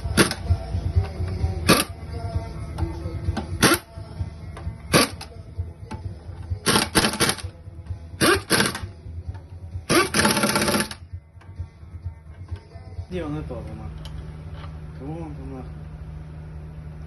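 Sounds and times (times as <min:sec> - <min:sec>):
low hum: 0:00.0 - 0:17.0
mechanical clatter bursts: 0:01.6 - 0:02.0, 0:04.9 - 0:05.3, 0:06.6 - 0:07.5, 0:08.2 - 0:08.9, 0:09.9 - 0:11.0.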